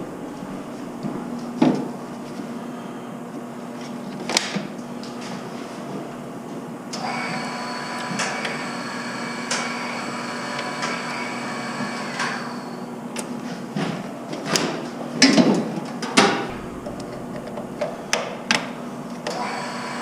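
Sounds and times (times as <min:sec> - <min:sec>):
high-pitched electrical whine: 0:00.0 - 0:03.1, 0:16.4 - 0:20.0
electrical low hum: 0:00.0 - 0:03.4, 0:05.7 - 0:06.9, 0:16.4 - 0:20.0.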